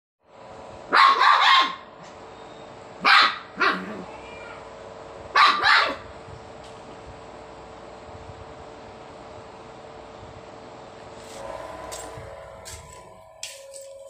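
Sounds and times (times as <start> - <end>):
dog barking: 0.9 - 1.8, 3.0 - 3.9, 5.4 - 6.0.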